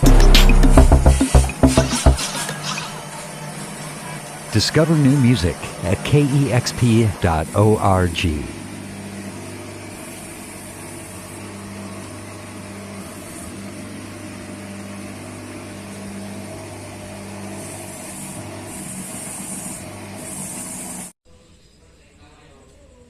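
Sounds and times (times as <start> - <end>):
electric motor humming: 2.5 - 21.0.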